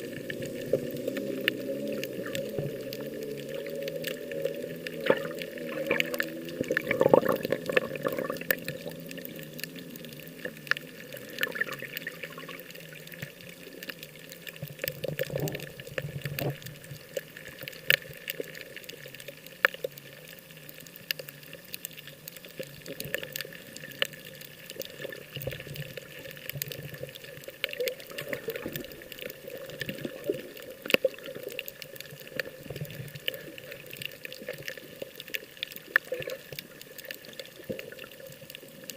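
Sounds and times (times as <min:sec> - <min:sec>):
low wavering hum: 0:00.0 - 0:12.7
water sloshing and splashing: 0:00.0 - 0:20.4, 0:21.1 - 0:38.9
small sharp clicks and crackles: 0:00.0 - 0:38.9.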